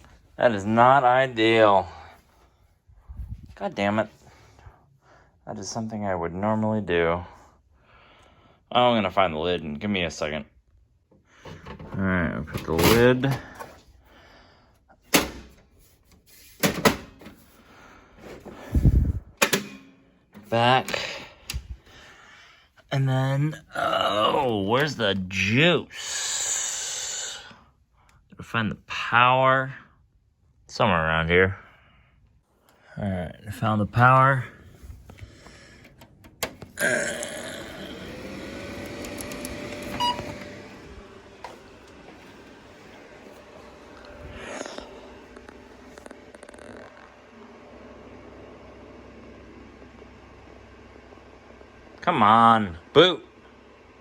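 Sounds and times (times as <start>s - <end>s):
cooling fans whirring: 0.1s - 28.2s, 31.3s - 54.0s
short beep: 40.0s - 40.2s.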